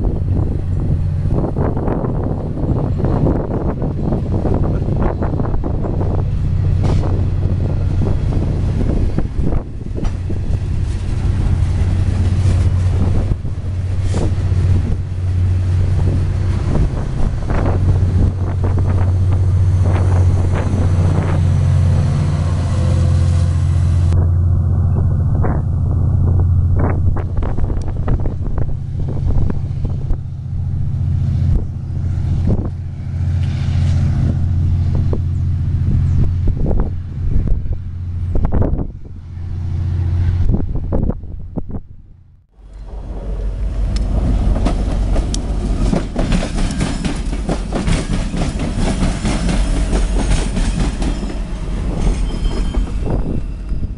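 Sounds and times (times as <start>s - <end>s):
freight train rumbling: 0.0s - 53.9s
train wheels clanking: 42.6s - 53.9s.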